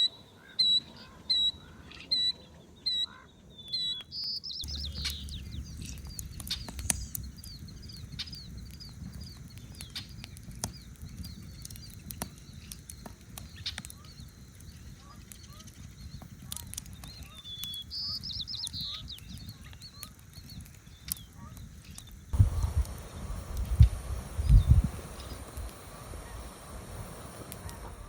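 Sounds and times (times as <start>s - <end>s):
low steady hiss: 17.4s - 28.0s.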